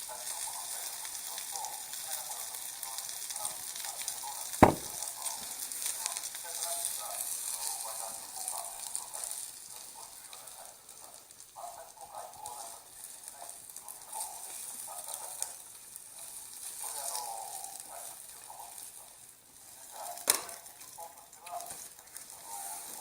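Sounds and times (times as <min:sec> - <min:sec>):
sharp knock: 0:04.6 - 0:05.0.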